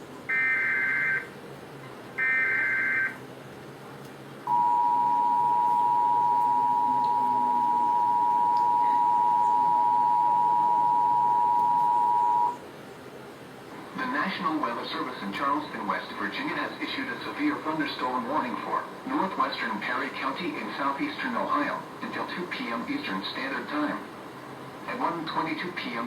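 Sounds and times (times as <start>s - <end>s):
two-tone attention signal: 0.3s - 1.3s, 2.2s - 3.2s, 4.5s - 12.6s.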